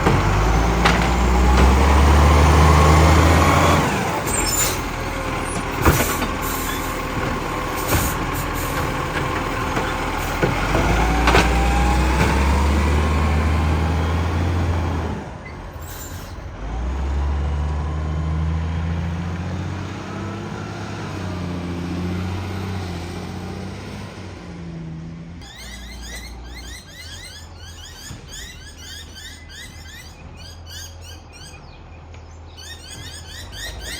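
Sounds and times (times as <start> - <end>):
sharp knocks and clatter: 0.0 - 2.0, 5.5 - 12.5
garbage truck engine pulling hard: 0.0 - 33.9.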